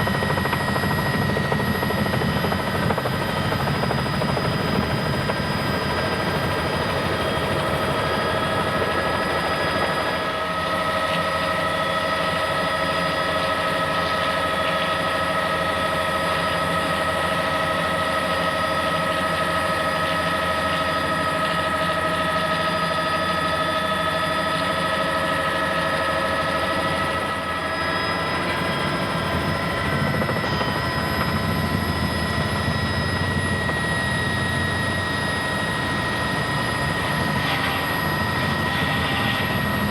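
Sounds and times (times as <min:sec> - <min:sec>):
helicopter rotor chop: 0:00.0 - 0:39.9
turbine whine: 0:00.0 - 0:39.9.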